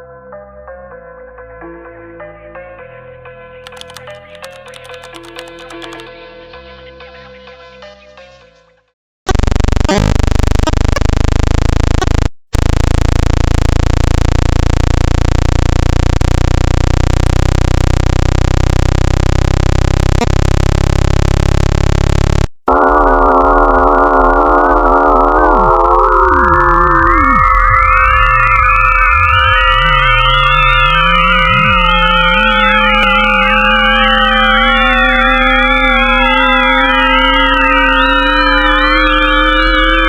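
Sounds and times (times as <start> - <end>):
electronic drone of stacked tones: 9.3 - 40.0.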